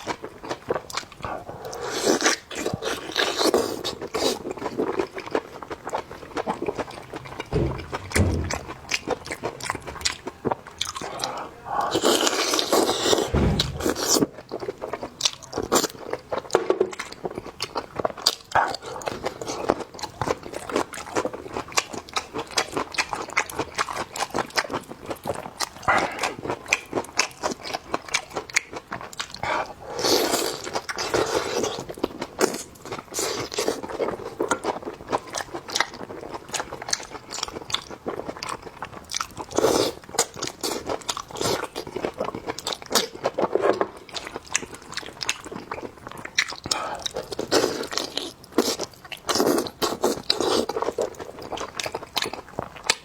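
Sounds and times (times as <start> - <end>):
chewing and biting: 15.2 - 53.0.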